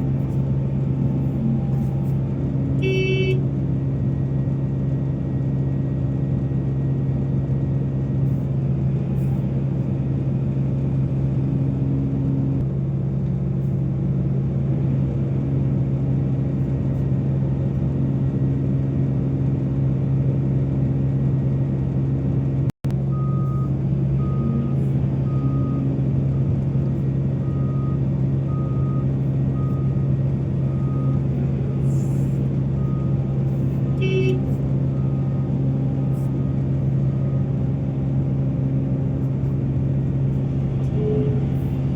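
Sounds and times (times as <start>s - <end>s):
heavy diesel engine running: 0.0s - 41.9s
reversing alarm beeping: 40.9s - 41.7s.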